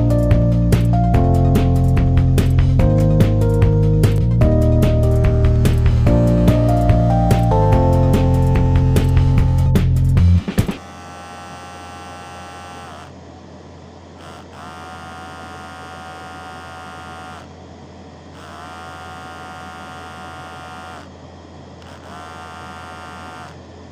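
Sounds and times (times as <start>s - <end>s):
steady low hum: 0.0s - 23.9s
hair trimmer motor buzzing: 4.4s - 13.2s, 14.2s - 17.6s, 18.3s - 21.1s, 21.8s - 23.6s.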